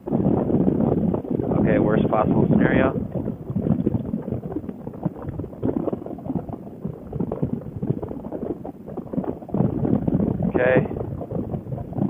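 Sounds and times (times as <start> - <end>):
low wind rumble: 0.0 - 12.0.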